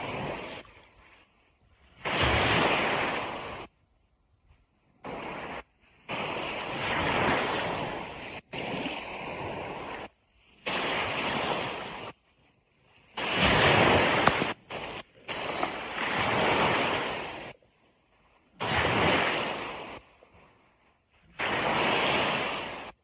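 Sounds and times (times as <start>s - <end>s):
ocean surf washing onto beach: 13.0s - 20.6s, 21.2s - 23.0s.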